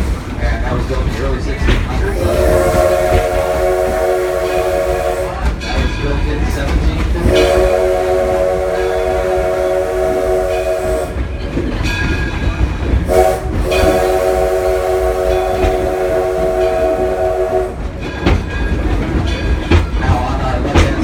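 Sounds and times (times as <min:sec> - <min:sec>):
train rumble and rail clatter: 0:00.0 - 0:21.0
steam locomotive chime whistle: 0:02.1 - 0:05.9, 0:07.2 - 0:11.3, 0:13.1 - 0:18.3.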